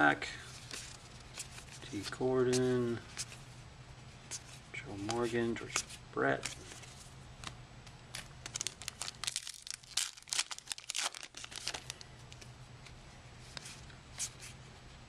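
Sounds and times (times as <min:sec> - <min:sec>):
wrapper crinkling and tearing: 0:08.1 - 0:12.1.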